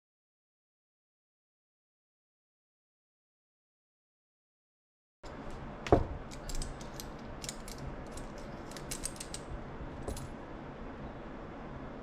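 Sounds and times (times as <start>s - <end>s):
metal shaft clicking in tool: 6.3s - 9.5s.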